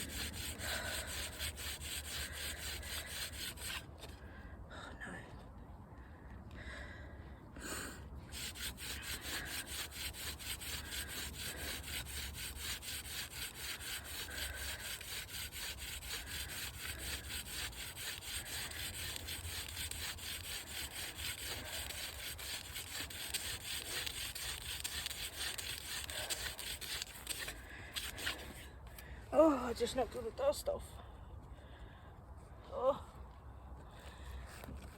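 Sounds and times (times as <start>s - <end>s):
wooden hand drill grinding: 0.0s - 4.2s, 8.3s - 28.7s.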